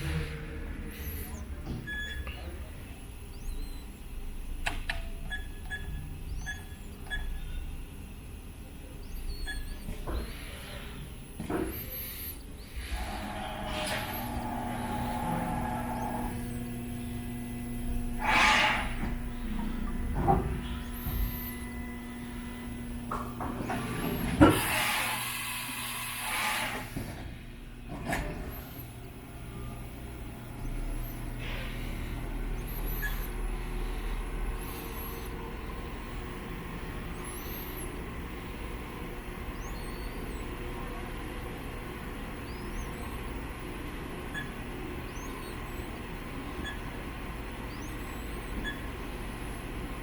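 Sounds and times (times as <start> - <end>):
milling machine hum: 7.8 - 50.0.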